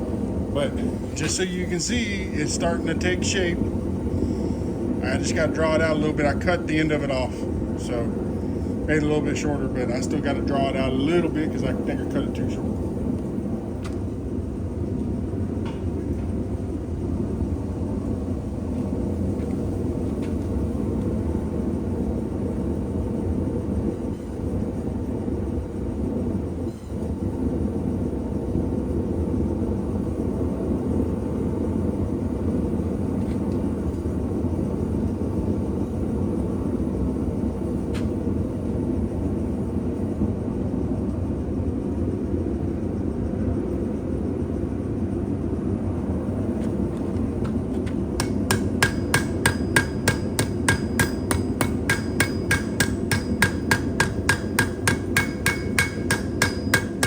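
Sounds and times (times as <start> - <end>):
hammer striking steel on anvil: 48.2 - 57.0.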